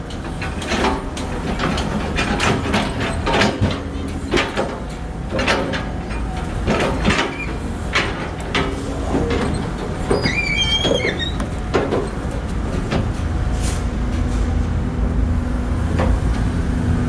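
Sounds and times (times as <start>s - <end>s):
digger engine rumble: 0.0s - 17.0s.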